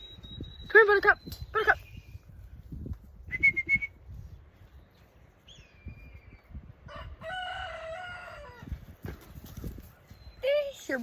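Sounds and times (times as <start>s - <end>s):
rooster crowing: 6.8s - 8.7s.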